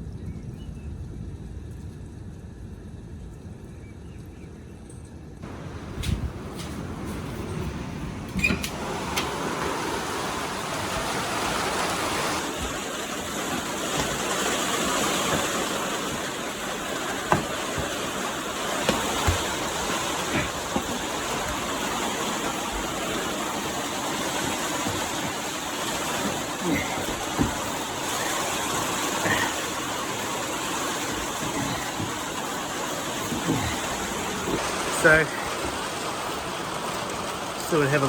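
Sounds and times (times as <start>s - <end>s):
heavy rain: 5.4s - 38.0s
dripping taps: 5.5s - 35.8s.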